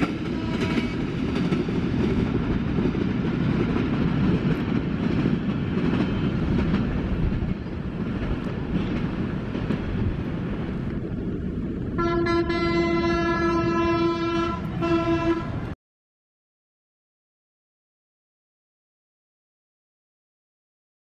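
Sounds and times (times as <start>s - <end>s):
train rumbling past: 0.0s - 15.8s
locomotive horn blast: 12.0s - 15.8s.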